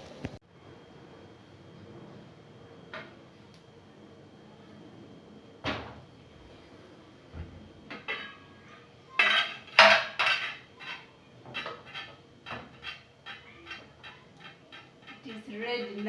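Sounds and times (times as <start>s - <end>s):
metal utensils clinking on pot: 9.2s - 16.0s.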